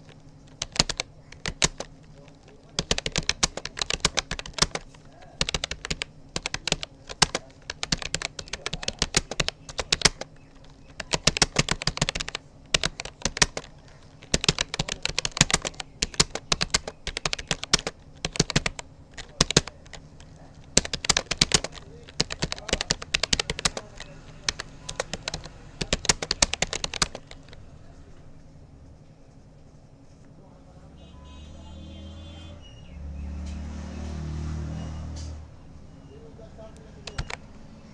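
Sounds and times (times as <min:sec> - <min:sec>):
computer keyboard typing: 0:00.0 - 0:27.7, 0:36.7 - 0:37.9.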